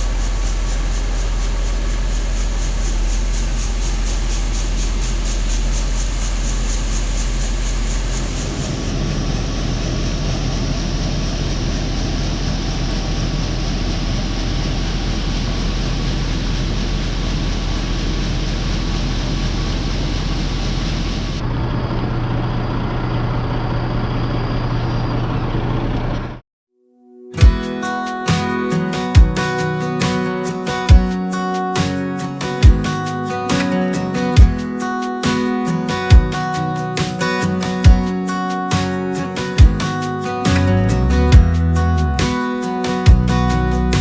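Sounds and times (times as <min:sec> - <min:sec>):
harvest machinery running: 0:27.4 - 0:44.0.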